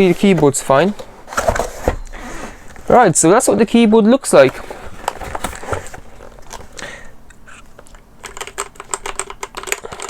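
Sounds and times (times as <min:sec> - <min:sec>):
mechanical keyboard clacking: 0:08.2 - 0:10.0.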